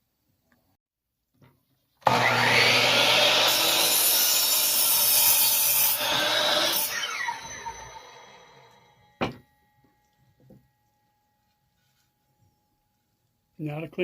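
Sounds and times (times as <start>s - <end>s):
power saw cutting wood: 2.0s - 9.0s
saw blade spinning down: 2.0s - 9.0s.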